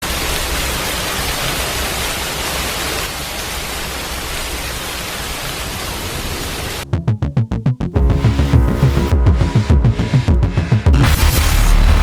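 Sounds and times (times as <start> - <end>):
rushing water: 0.0 - 6.8.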